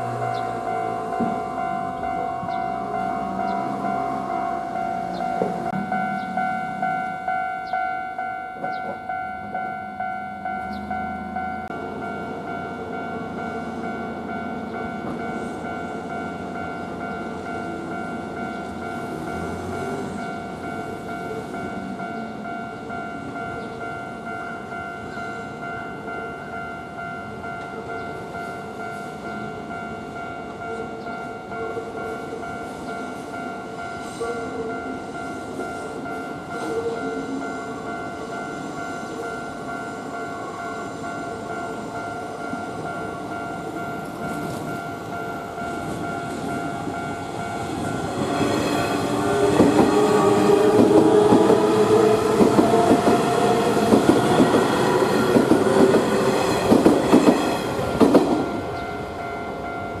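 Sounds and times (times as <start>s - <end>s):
electric train whine: 0.0s - 60.0s
level-crossing warning bell: 0.0s - 60.0s
train wheel clatter: 47.8s - 58.5s.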